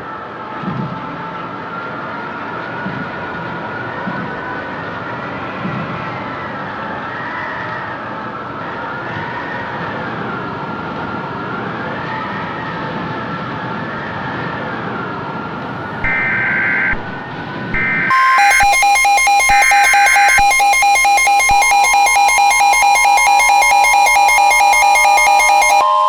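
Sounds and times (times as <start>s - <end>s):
harsh pulsing alert tone: 16.0s - 26.0s
screechy data tones: 16.0s - 26.0s
siren wailing up and down: 16.0s - 26.0s
two-note attention tone: 17.8s - 26.0s.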